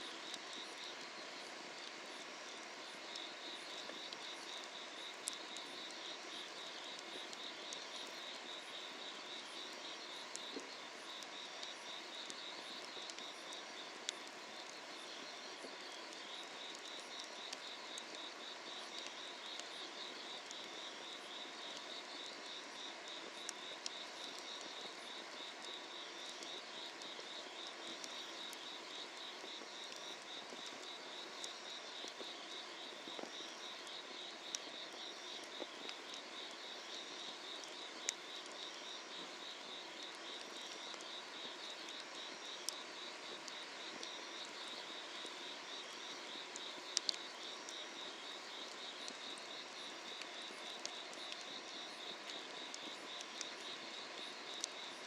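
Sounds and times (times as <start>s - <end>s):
wood fire crackling: 0.0s - 55.0s
insects trilling: 0.1s - 55.0s.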